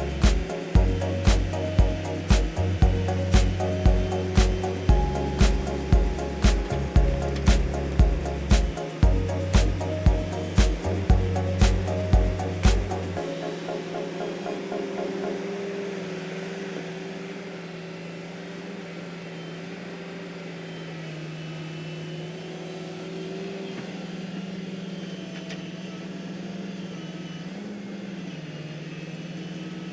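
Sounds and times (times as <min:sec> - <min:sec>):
toy electric motor humming: 0:00.0 - 0:14.0.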